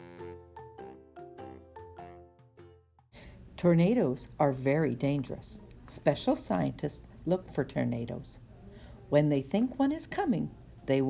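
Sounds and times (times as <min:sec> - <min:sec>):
mallet percussion music: 0:00.0 - 0:02.8.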